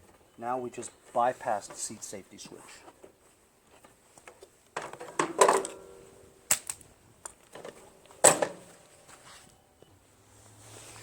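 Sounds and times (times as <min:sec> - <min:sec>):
handling clicks and knocks: 0:02.9 - 0:08.7.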